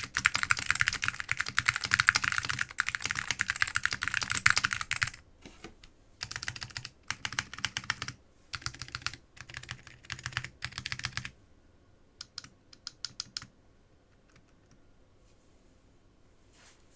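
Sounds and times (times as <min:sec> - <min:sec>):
mechanical keyboard typing: 0:00.0 - 0:05.2, 0:06.2 - 0:11.3, 0:12.2 - 0:13.5.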